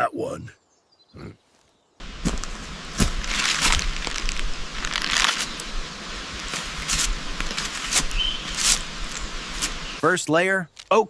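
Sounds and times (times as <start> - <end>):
dry leaves rustling and crunching: 2.0 - 10.0.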